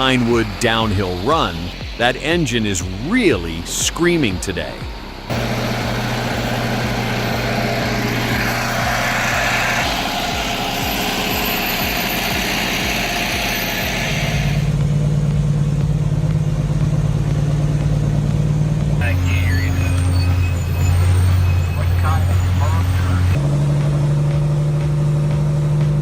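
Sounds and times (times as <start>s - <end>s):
high hiss: 0.0s - 14.9s
heavy diesel engine under load: 0.0s - 26.0s.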